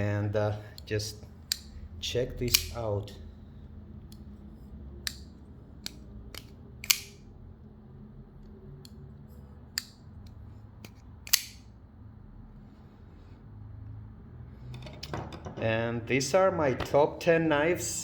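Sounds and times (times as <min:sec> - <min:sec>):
folding knife clicking open and shut: 0:01.5 - 0:01.8, 0:02.4 - 0:02.8, 0:05.0 - 0:07.2, 0:09.7 - 0:10.0, 0:10.8 - 0:11.7.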